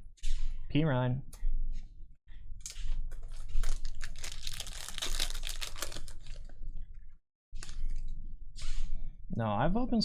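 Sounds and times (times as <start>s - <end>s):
foil wrapper crinkling and tearing: 2.6s - 6.6s.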